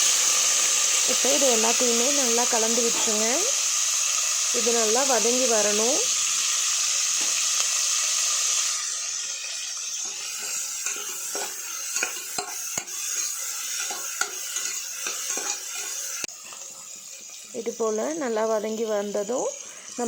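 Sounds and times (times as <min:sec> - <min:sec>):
vegetables sizzling in hot oil: 0:00.0 - 0:20.0
spoon scraping and knocking pot: 0:10.0 - 0:16.6.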